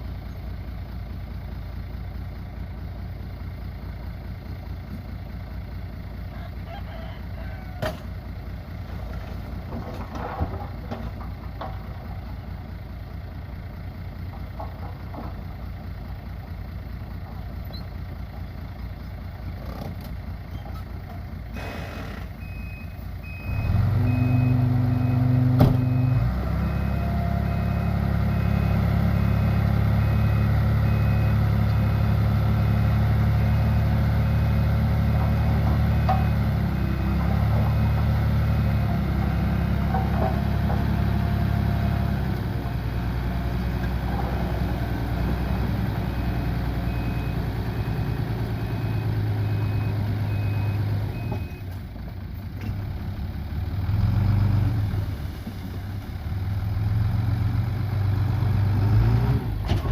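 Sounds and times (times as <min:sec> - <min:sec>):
heavy diesel machinery running: 0:00.0 - 0:59.9
reversing alarm beeping: 0:22.4 - 0:32.1, 0:45.8 - 0:51.7.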